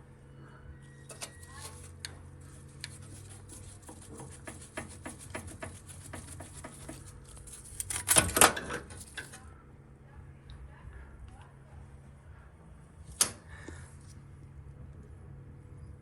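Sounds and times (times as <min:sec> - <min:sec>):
hard objects clicking and tapping: 0:03.5 - 0:09.4.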